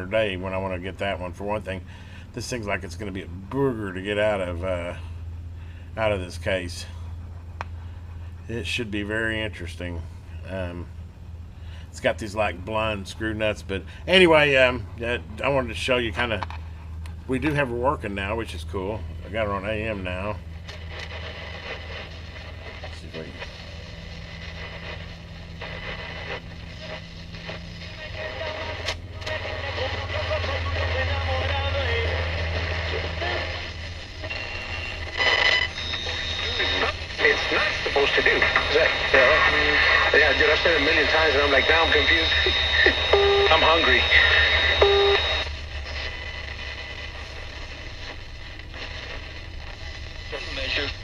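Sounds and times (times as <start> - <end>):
steady low hum: 0.0 - 51.0
radio static hiss: 11.7 - 51.0
broadcast voice: 12.0 - 16.5, 36.4 - 45.2, 50.3 - 51.0.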